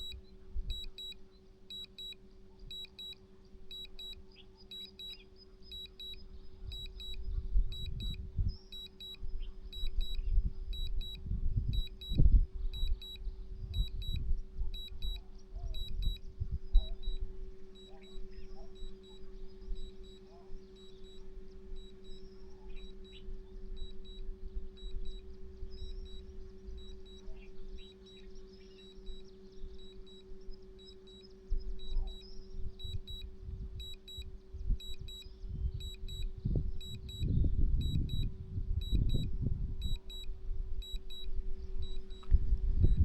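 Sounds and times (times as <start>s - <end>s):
short high beeps: 0.0s - 7.2s, 14.8s - 15.2s, 15.8s - 16.2s
low hum: 0.0s - 43.0s
wind rumbling on microphone: 6.4s - 20.7s, 31.5s - 43.0s.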